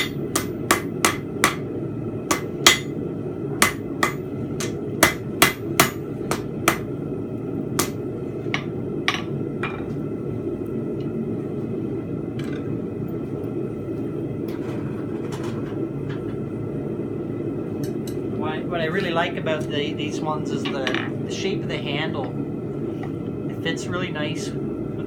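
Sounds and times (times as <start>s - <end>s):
hammer striking steel on anvil: 0.0s - 1.6s, 2.3s - 2.9s, 3.6s - 6.9s.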